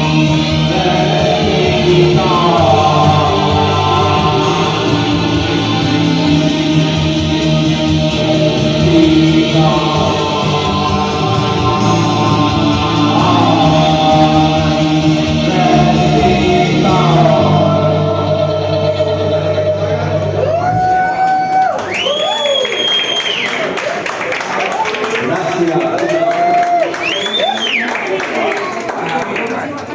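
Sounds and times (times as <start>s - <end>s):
live band playing: 0.0s - 21.4s
guitar: 0.0s - 22.3s
person singing: 0.0s - 22.6s.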